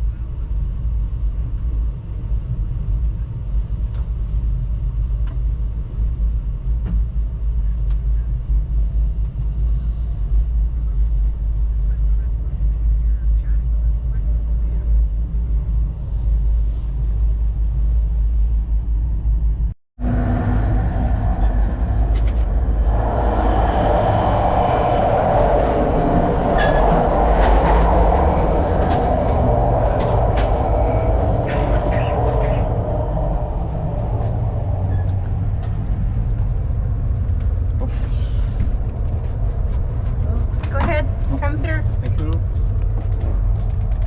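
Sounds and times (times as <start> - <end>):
train rumbling on rails: 0.0 - 44.0
loud rushing noise: 20.0 - 37.6.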